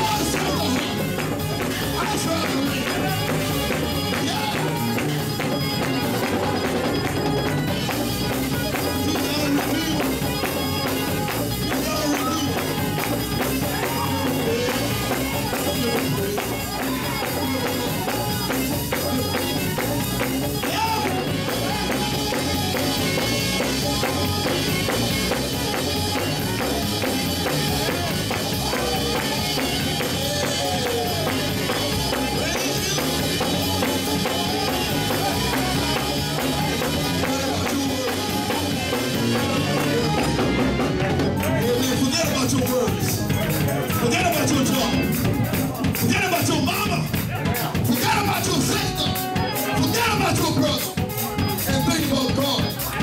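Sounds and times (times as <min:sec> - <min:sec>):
drums beating: 0:00.0 - 0:53.0
fast church praise music: 0:00.0 - 0:53.0.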